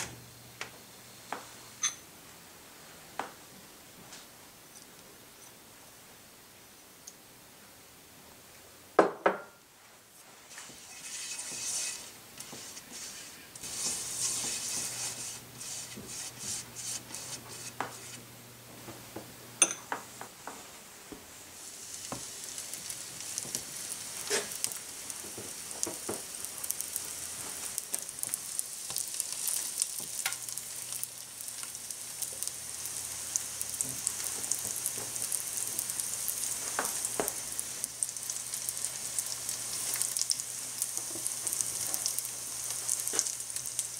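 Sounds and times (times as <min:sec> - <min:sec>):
dough sizzling in frying oil: 0:10.1 - 0:18.9, 0:19.6 - 0:43.9.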